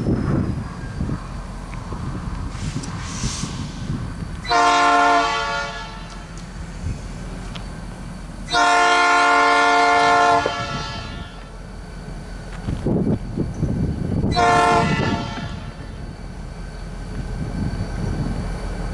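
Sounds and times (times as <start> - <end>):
low rumble: 0.0 - 8.4
locomotive air horn chord: 4.5 - 6.4, 8.5 - 11.4, 14.3 - 15.8.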